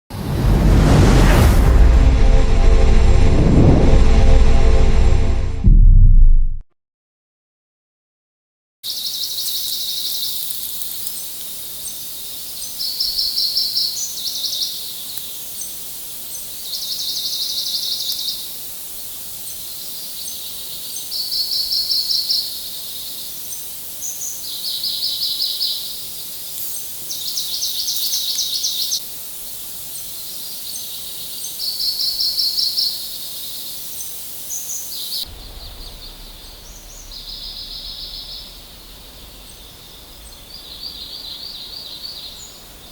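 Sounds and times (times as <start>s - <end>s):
steady high hiss: 25.8s - 31.8s, 32.8s - 42.9s.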